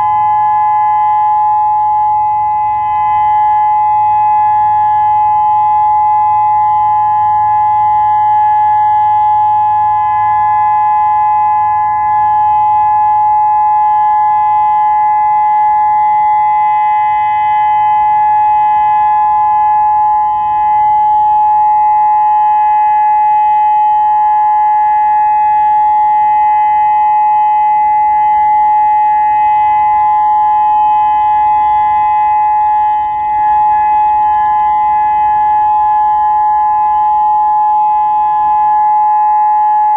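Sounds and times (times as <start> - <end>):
dual-tone warning siren: 0.0 - 39.9.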